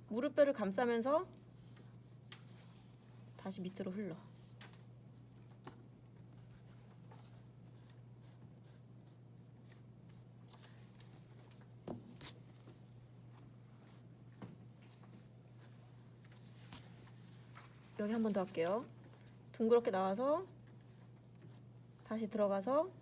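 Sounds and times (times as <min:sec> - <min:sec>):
low room hum: 0:00.0 - 0:23.0
pencil scratching on paper: 0:13.3 - 0:23.0.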